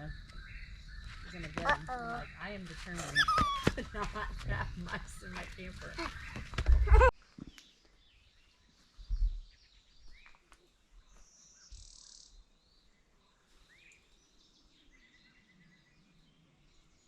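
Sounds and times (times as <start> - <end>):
bird chirps: 0.0 - 3.8, 5.2 - 17.0.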